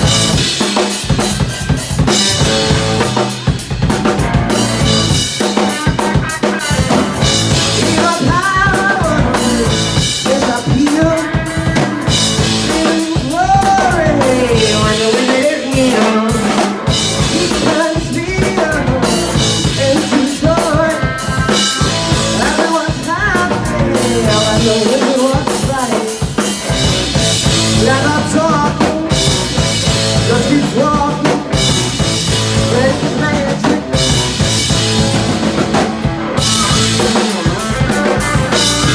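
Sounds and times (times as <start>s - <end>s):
drum kit: 0.0s - 38.9s
live rock band playing: 0.0s - 38.9s
wavering lead melody: 31.2s - 38.9s.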